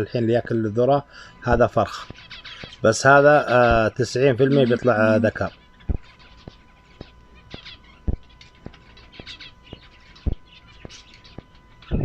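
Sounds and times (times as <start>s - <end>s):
faint steady hum: 0.0s - 12.0s
finches chirping: 0.0s - 12.0s
sharp ticks: 5.8s - 11.6s.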